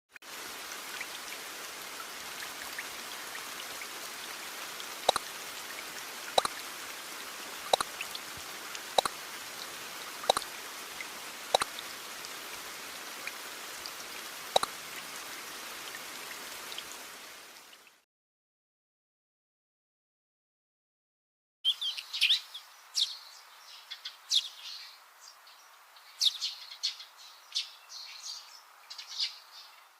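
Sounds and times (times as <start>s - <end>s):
steady rain: 0.2s - 18.0s
single water drops falling: 5.0s - 5.3s, 6.4s - 6.6s, 7.7s - 9.2s, 10.2s - 11.9s, 14.5s - 14.8s.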